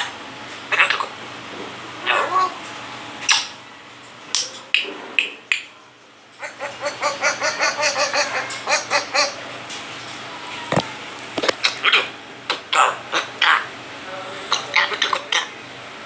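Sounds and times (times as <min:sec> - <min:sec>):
parrot calling: 0:00.7 - 0:01.2, 0:02.0 - 0:02.6, 0:06.4 - 0:09.5, 0:10.6 - 0:13.8, 0:14.5 - 0:15.6.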